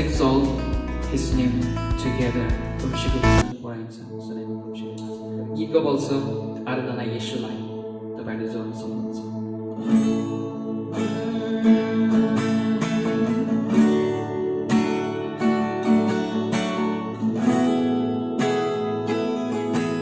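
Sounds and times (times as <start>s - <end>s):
guitar strumming chords: 0.0s - 3.5s, 8.6s - 20.0s.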